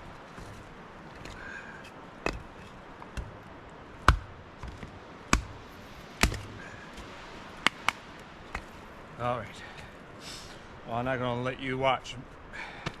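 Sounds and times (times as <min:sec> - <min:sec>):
axe chopping wood: 0:04.0 - 0:08.7.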